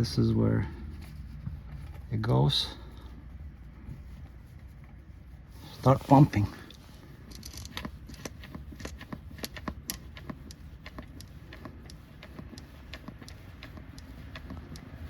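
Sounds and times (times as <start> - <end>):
low steady hum: 0.0 - 15.0
hand pump clicking: 7.3 - 15.0.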